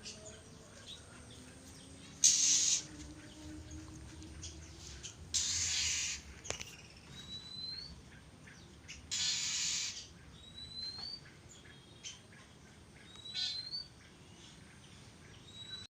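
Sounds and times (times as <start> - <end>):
bird chips: 1.4 - 7.9.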